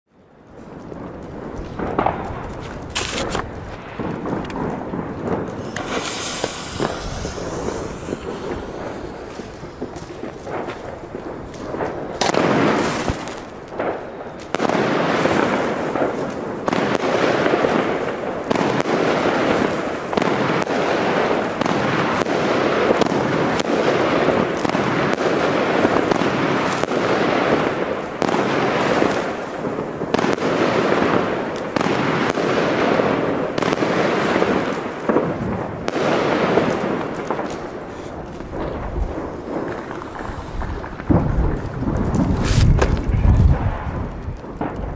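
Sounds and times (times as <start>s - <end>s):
dense crackling pops: 0.2s - 44.9s.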